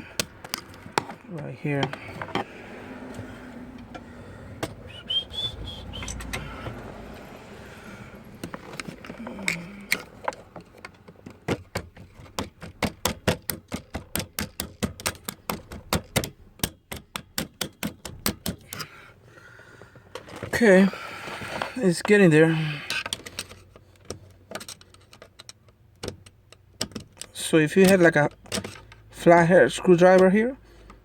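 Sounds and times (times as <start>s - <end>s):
metal clicks and handling noise: 0.0s - 2.5s, 6.0s - 7.2s, 8.4s - 18.9s, 22.9s - 29.1s.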